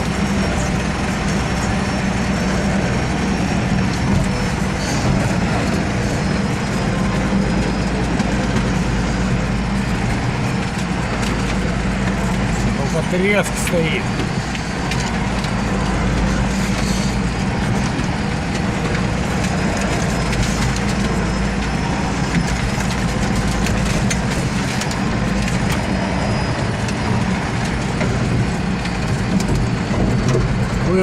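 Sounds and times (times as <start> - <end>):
vehicle engine under load: 0.0 - 31.0
branches crackling and snapping: 14.2 - 29.8.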